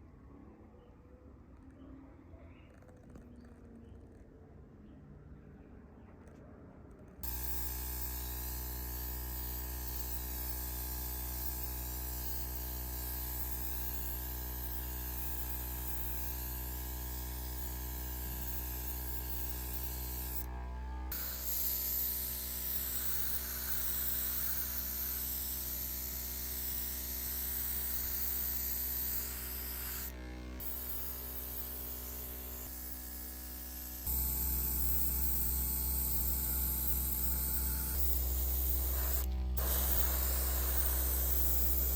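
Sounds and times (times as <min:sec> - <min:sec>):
steady machine hum: 0:07.2 - 0:41.9
hiss of air or spray: 0:38.8 - 0:41.9.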